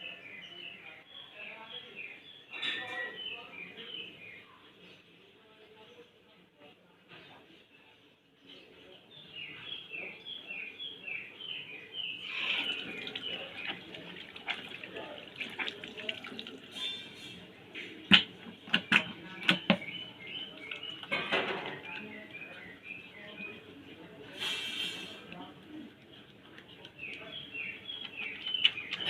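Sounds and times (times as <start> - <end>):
water running from a tap: 12.3 - 17.0.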